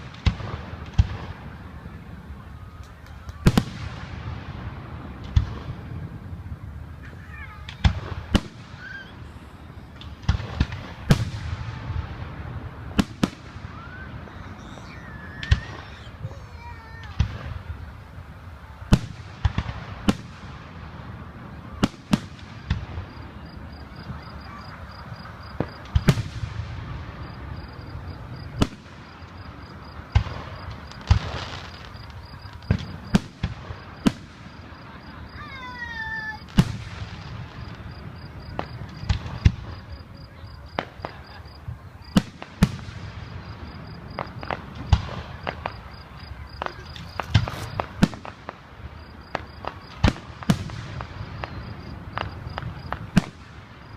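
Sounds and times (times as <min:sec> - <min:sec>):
fireworks bangs: 0:00.0 - 0:53.9
wavering firework whistle: 0:13.0 - 0:16.3.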